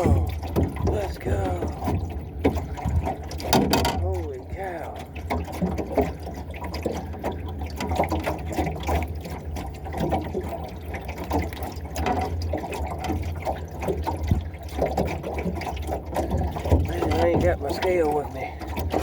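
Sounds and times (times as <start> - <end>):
steady low hum: 0.0 - 5.3
fish splashing in water: 0.0 - 19.0.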